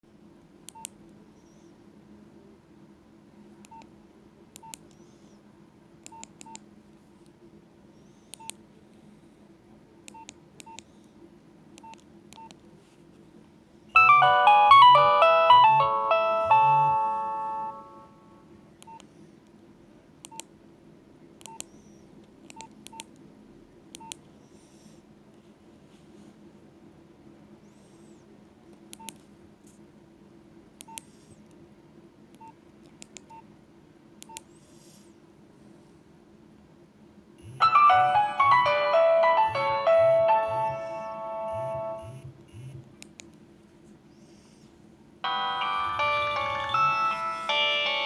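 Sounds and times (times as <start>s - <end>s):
phone keypad beeps: 14.0s - 18.0s, 37.5s - 42.7s
phone ringtone melody: 14.0s - 18.4s, 37.6s - 42.2s, 45.2s - 48.0s.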